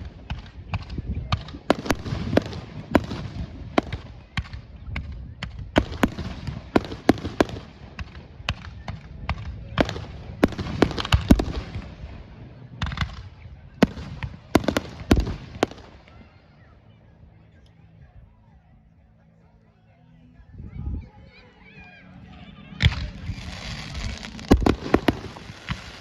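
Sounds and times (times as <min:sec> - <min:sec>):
fireworks bangs and crackles: 0:00.0 - 0:16.2, 0:22.8 - 0:26.0.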